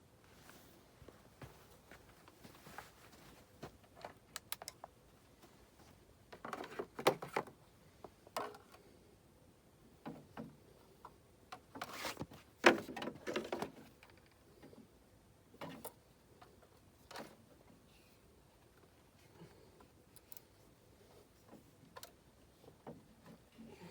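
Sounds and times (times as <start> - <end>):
tools clicking and tapping: 4.0 - 4.9.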